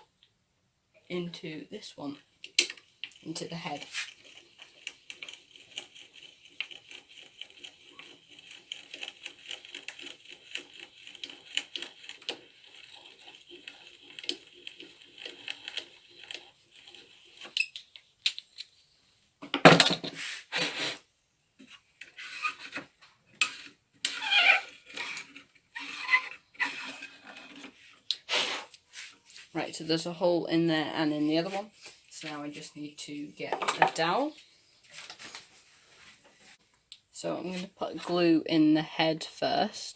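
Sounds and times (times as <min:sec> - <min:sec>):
hand drill clicking rattle: 0:02.5 - 0:18.4
wood and tools clattering: 0:19.4 - 0:20.8, 0:21.6 - 0:28.1, 0:33.4 - 0:36.4.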